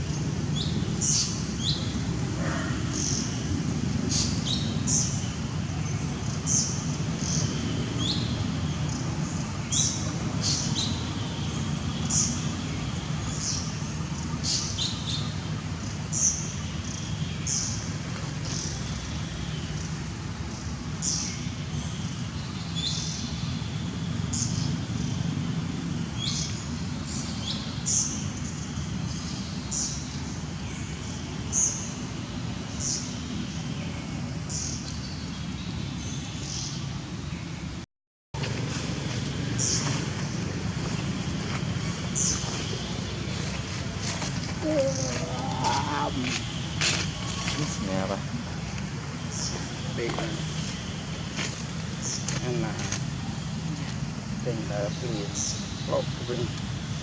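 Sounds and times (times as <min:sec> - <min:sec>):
steady low rumble: 0:38.4 - 0:55.1.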